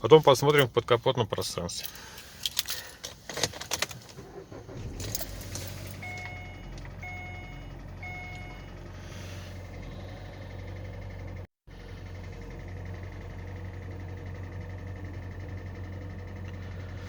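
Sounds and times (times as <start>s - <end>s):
car engine starting and idling: 0.0s - 17.0s
keys clicking in ignition: 0.1s - 8.7s
dashboard chimes: 5.9s - 8.7s.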